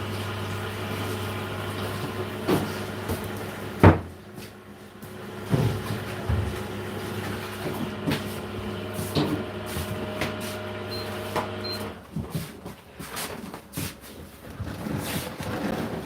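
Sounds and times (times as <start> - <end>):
kitchen appliance motor humming: 4.9 - 12.0.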